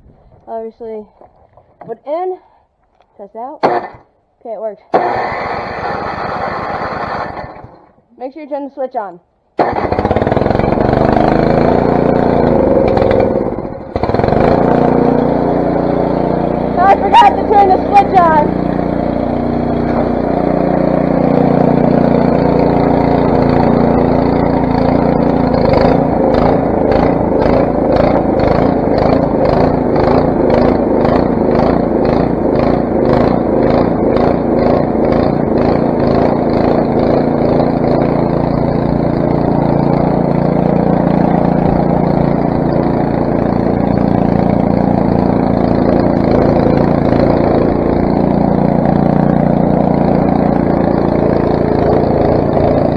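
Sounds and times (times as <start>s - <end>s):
snowblower engine running: 3.6s - 4.1s, 4.9s - 8.0s, 9.6s - 52.9s
regular pulsing: 15.0s - 22.2s.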